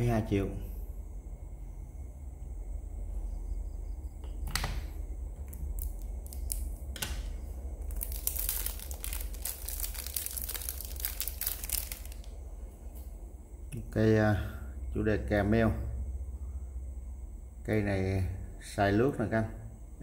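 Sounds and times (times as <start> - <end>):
crinkling and rustling: 5.4 - 13.1.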